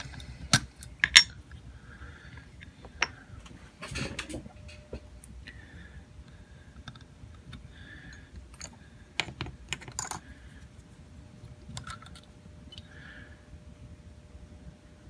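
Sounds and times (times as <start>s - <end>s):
lock picks clicking: 0.5s - 1.5s.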